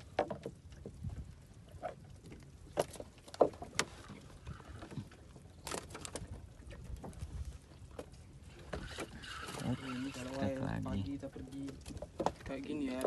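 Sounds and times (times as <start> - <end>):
knocks and taps on boat: 0.0 - 1.0, 11.8 - 13.0
water against hull: 0.0 - 13.0.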